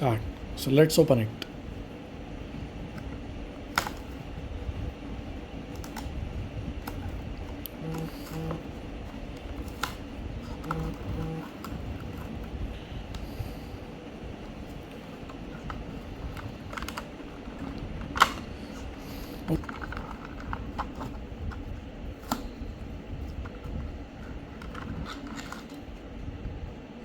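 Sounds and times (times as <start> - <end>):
low steady hum: 0.0 - 27.0
packaging clicks and snaps: 2.9 - 4.3, 5.7 - 13.3, 14.5 - 25.9.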